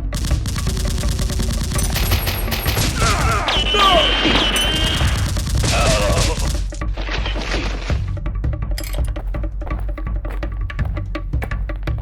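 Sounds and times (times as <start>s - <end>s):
rapid automatic gunfire: 0.0s - 6.8s.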